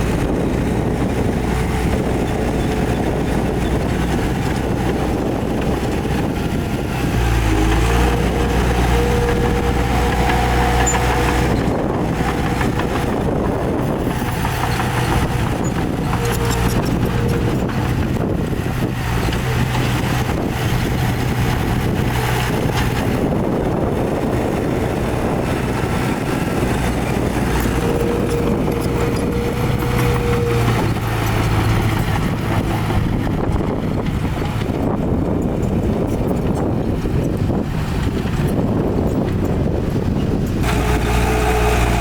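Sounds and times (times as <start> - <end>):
heavy diesel machinery running: 0.0 - 42.0.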